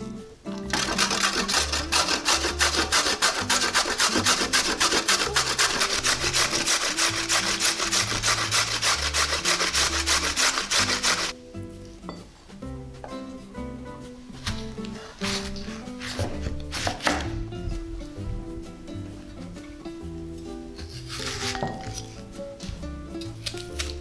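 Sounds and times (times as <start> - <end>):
background music: 0.0 - 24.0
vegetables scraping against blade: 0.5 - 11.4, 14.3 - 17.8, 20.8 - 24.0.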